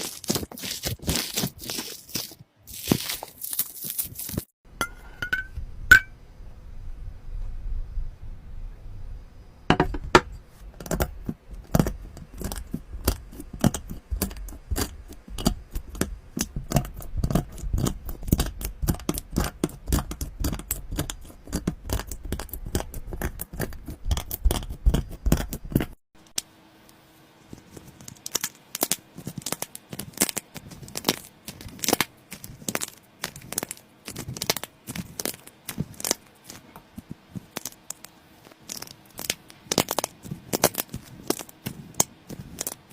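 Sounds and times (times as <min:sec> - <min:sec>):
slime crackling: 0:00.0 - 0:04.5, 0:27.8 - 0:42.9
faint steady hum: 0:00.0 - 0:42.9.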